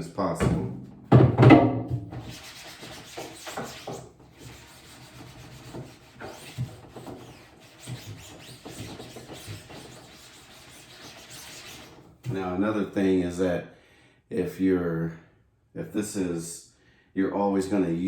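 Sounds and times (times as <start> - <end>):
cloth scrubbing wet screen: 2.0 - 12.5.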